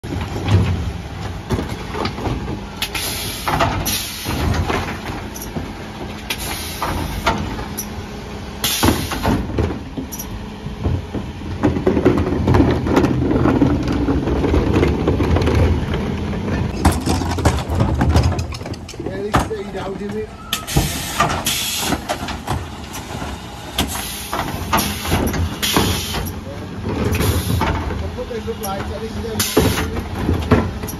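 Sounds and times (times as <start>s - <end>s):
knocks and clanks: 0.0s - 8.0s, 8.6s - 30.9s
truck engine running: 0.0s - 30.9s
air hissing: 20.5s - 22.0s, 23.8s - 26.3s.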